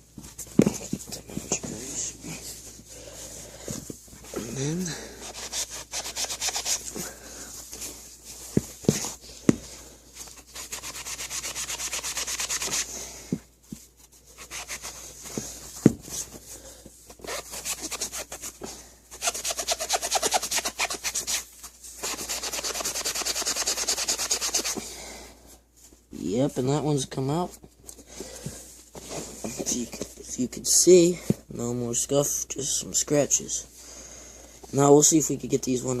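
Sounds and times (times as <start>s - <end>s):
foam scrubbing a sneaker: 5.1s - 7.2s, 10.4s - 12.9s, 14.3s - 15.6s, 19.2s - 24.8s.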